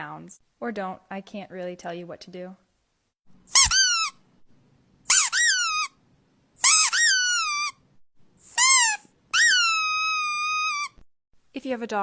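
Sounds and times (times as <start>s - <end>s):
squeaky toy squeaking: 3.5s - 4.2s, 5.1s - 6.0s, 6.6s - 7.8s, 8.5s - 11.0s.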